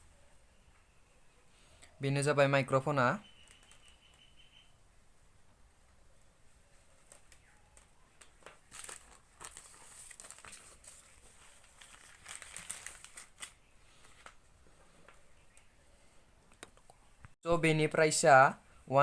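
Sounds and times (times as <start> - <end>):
packaging crinkling and rustling: 7.0 - 14.4.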